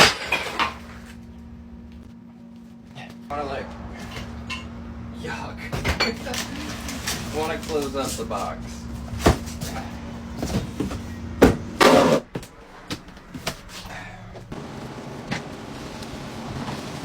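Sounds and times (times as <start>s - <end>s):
low steady hum: 0.0s - 16.4s
scraping rustle of cardboard: 6.3s - 11.1s.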